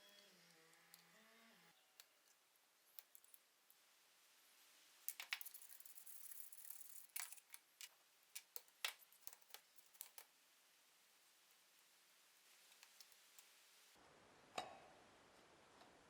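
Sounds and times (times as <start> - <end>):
small tools clicking and tapping: 1.9 - 3.5, 5.1 - 10.3.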